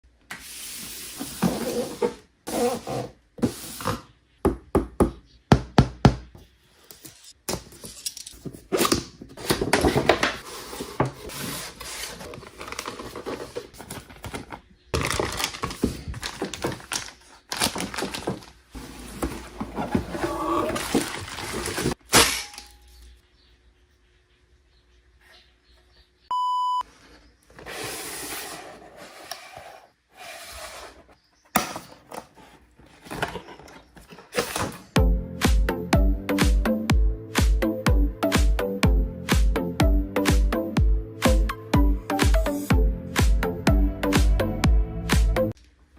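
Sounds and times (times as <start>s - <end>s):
toy and box handled: 7.0s - 22.0s, 27.5s - 35.0s
packaging rustling: 9.4s - 22.1s.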